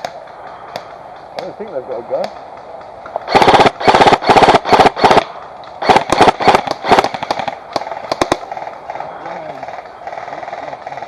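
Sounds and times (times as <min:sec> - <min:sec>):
airsoft gun firing: 0:03.2 - 0:09.0.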